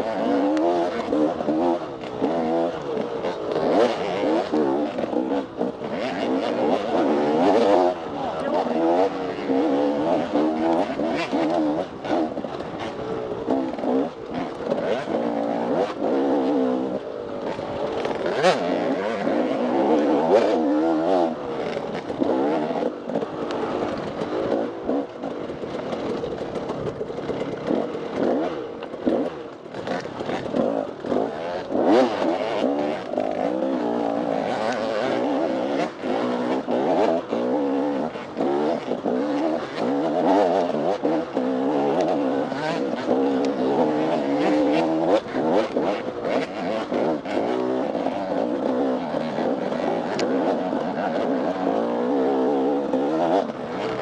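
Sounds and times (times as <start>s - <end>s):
dirt bike engine revving: 0.0s - 54.0s
bike knocking and clattering: 23.1s - 31.2s.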